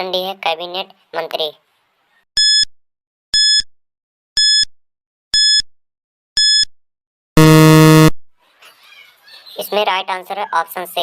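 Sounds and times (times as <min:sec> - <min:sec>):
low buzzer tone: 0:04.4 - 0:04.7, 0:05.4 - 0:05.6, 0:06.4 - 0:06.7, 0:07.4 - 0:08.2.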